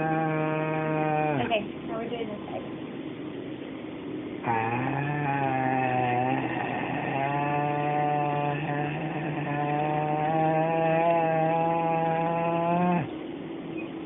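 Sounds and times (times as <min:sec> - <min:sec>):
person holding an open vowel: 0:00.0 - 0:01.6, 0:04.4 - 0:13.1.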